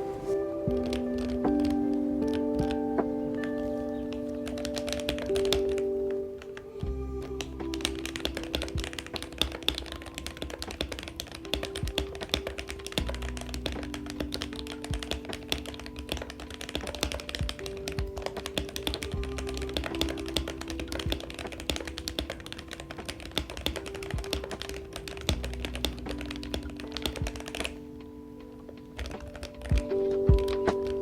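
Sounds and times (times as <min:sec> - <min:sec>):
background music: 0:00.0 - 0:31.0
mechanical keyboard typing: 0:00.7 - 0:06.7, 0:07.3 - 0:31.0.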